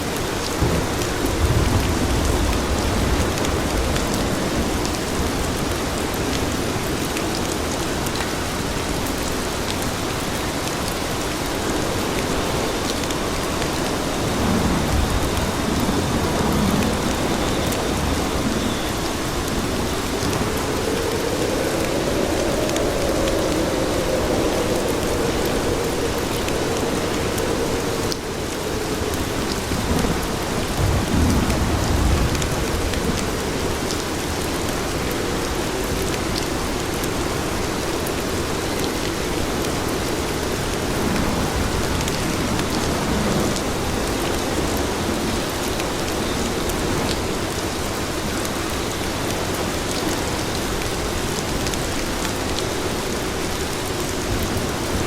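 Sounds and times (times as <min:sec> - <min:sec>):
rain falling on pavement: 0:00.0 - 0:55.0
low rumble: 0:14.7 - 0:33.6.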